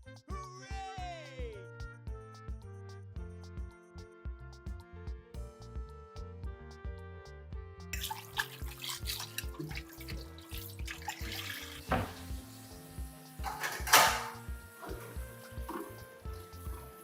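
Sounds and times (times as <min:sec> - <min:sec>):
background music with steady beat: 0:00.0 - 0:17.0
running water: 0:08.0 - 0:17.0.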